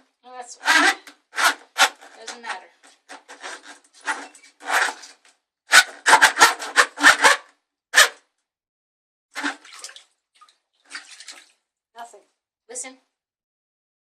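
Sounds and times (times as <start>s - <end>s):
drain snake cable scraping: 0.5s - 7.4s.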